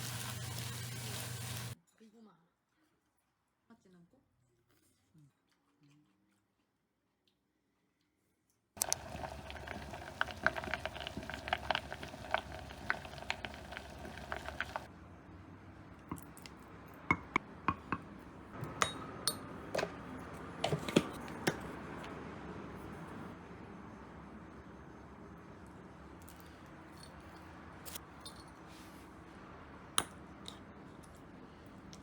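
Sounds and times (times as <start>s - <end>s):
food sizzling with crackles: 0.0s - 1.8s, 8.8s - 14.9s
utensils clinking on dishes: 18.6s - 20.0s.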